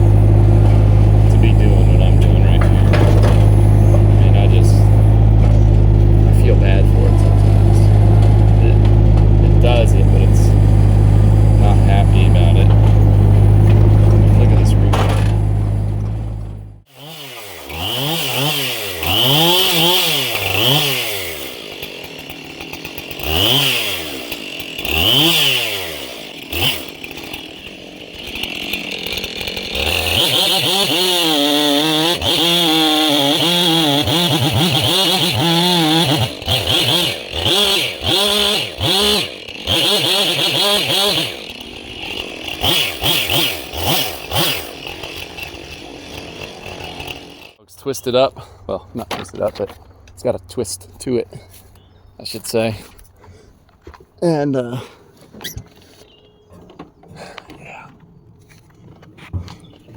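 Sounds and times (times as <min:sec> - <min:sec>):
chainsaw engine revving: 0:00.0 - 0:47.6.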